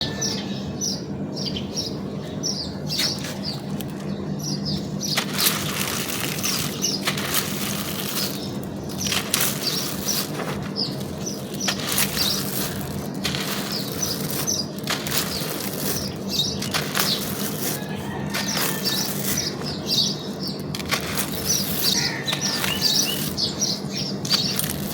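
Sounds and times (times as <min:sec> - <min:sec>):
dry material crunching by hand: 0:05.1 - 0:24.9.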